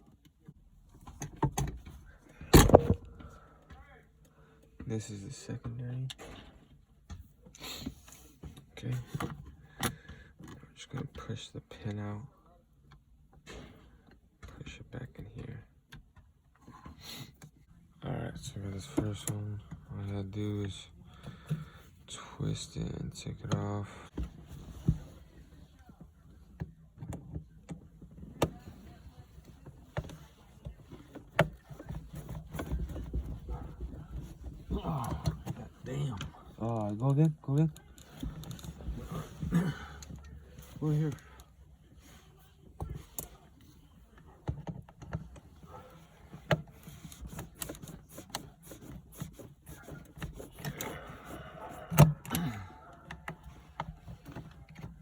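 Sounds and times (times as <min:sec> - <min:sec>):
clicks and rattles of car parts: 0:00.1 - 0:03.8, 0:23.2 - 0:41.7.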